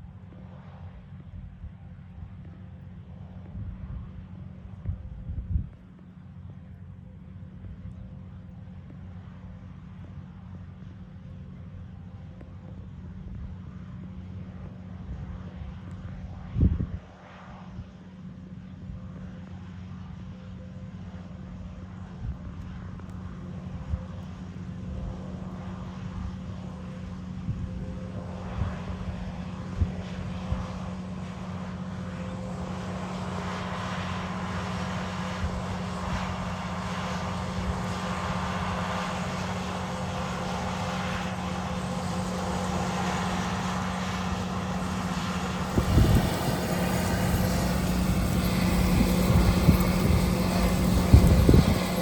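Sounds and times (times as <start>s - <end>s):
tractor diesel engine drone: 23.1s - 52.0s
wind buffeting microphone: 42.6s - 52.0s.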